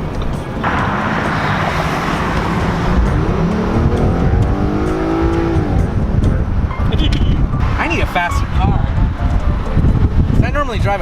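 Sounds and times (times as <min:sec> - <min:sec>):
car engine revving: 0:00.0 - 0:08.3.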